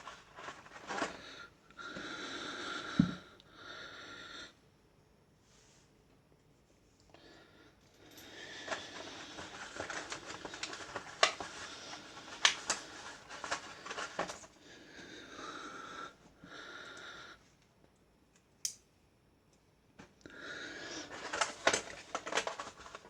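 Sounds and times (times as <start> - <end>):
rustling and handling noise: 0.0 - 1.5, 8.0 - 14.7, 20.8 - 23.0.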